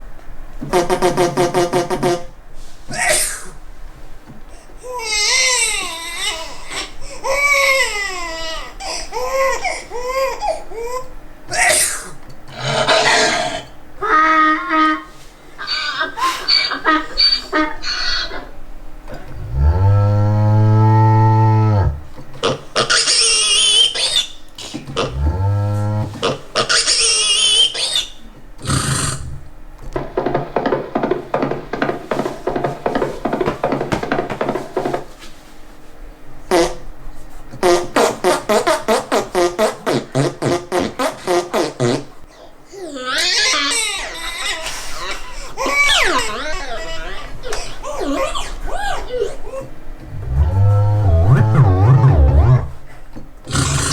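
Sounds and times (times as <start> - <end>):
baby crying: 4.8 - 18.5, 42.4 - 49.7
quick rhythmic taps: 29.9 - 35.1
low grunt: 50.0 - 52.8
high wavering squeal: 50.1 - 52.8.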